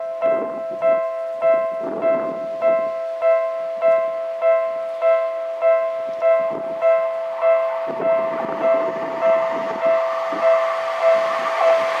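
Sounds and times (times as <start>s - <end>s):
level-crossing electronic bell: 0.0s - 12.0s.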